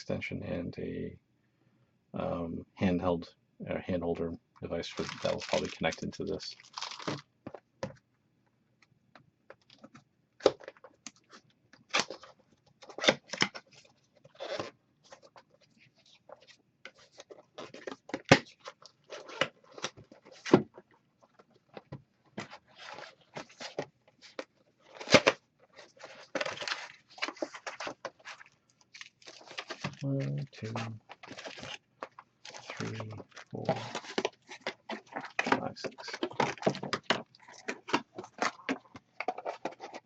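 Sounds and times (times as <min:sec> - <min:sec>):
packaging rustling: 0:04.9 - 0:07.6, 0:22.4 - 0:40.0.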